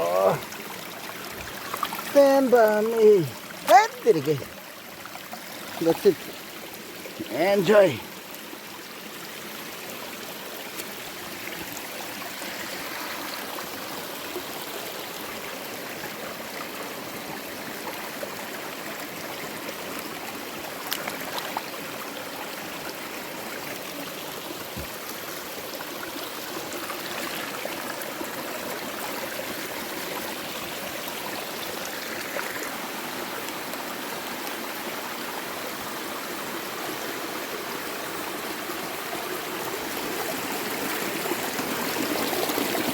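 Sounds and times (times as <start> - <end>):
creek water running: 0.0 - 42.9.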